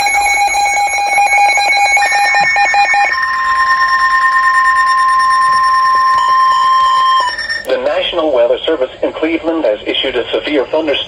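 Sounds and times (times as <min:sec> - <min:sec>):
pulsing electronic beeping: 0:00.0 - 0:07.8
continuous electronic alarm tone: 0:00.0 - 0:08.3.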